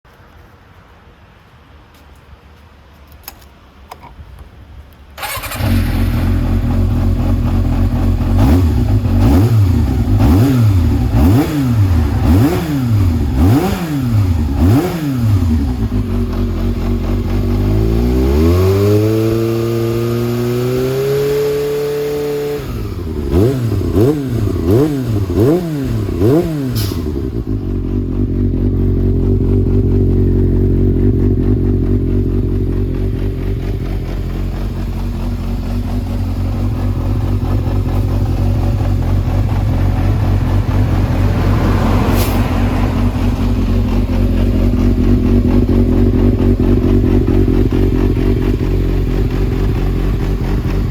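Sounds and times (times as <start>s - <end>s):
motorcycle engine revving: 5.2s - 50.9s.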